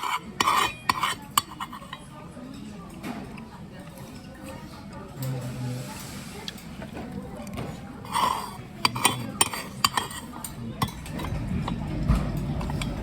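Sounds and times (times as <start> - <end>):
utensil clinking against bowl: 0.0 - 3.4, 6.5 - 13.0.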